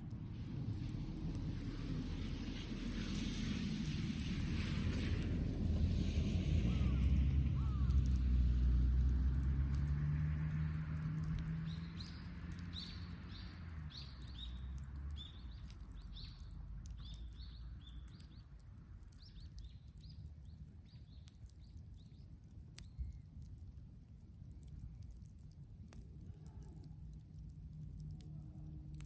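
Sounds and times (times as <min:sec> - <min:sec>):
low engine rumble: 0:00.0 - 0:21.7
faint crackles: 0:00.0 - 0:29.0
bird chirping: 0:11.6 - 0:18.5.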